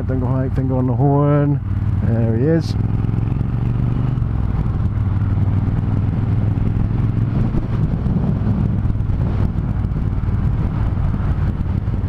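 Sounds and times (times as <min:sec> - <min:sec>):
motorcycle engine running: 0:00.0 - 0:12.0
wind rush over microphone: 0:02.8 - 0:12.0.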